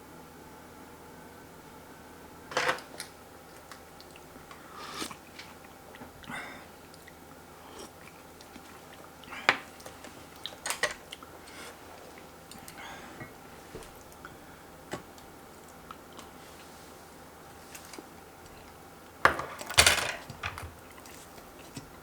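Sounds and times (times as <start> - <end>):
biting and chewing: 3.6 - 12.8.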